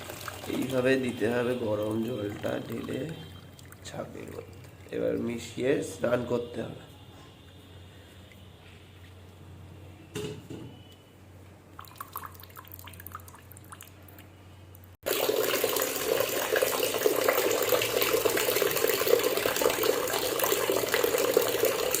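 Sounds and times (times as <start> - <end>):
water pouring into a bucket: 0.0 - 5.5, 11.8 - 14.0, 15.0 - 22.0.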